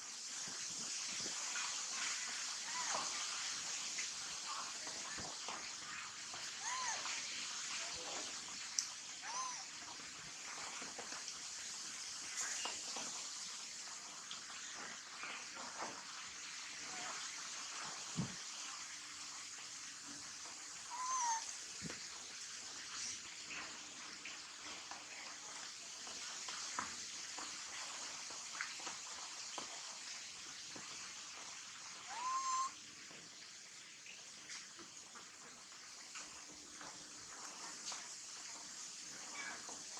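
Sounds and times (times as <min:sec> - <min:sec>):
steady hiss: 0:00.0 - 0:39.9
baby monkey calling: 0:06.6 - 0:07.1, 0:09.2 - 0:09.7, 0:20.9 - 0:21.6, 0:32.1 - 0:32.8.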